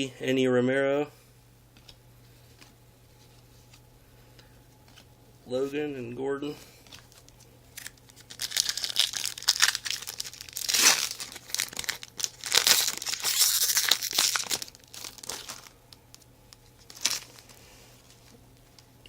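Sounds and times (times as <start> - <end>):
foil wrapper tearing and crinkling: 6.9 - 17.6.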